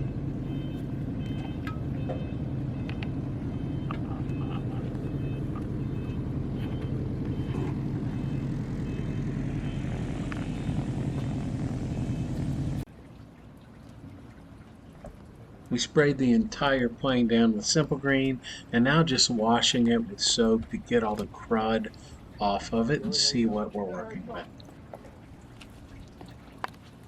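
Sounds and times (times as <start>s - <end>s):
motor droning: 0.0s - 12.9s.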